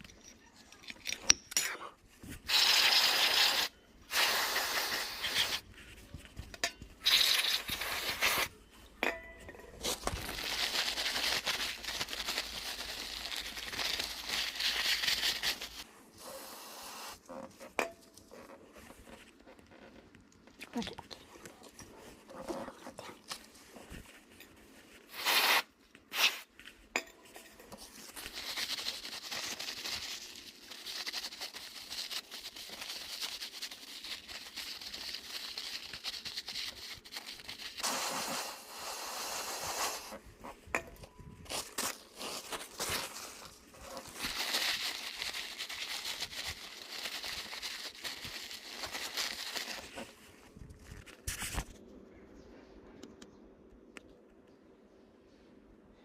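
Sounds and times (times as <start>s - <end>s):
scraping and crinkling: 17.2s - 38.6s, 39.5s - 52.0s.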